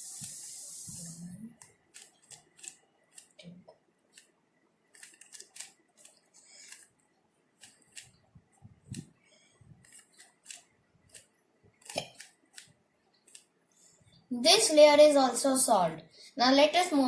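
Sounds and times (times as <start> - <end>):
short hiss: 0.0 - 1.3
puzzle cube clicks and scrapes: 0.1 - 3.4, 4.9 - 7.0, 7.6 - 8.2, 9.8 - 13.5.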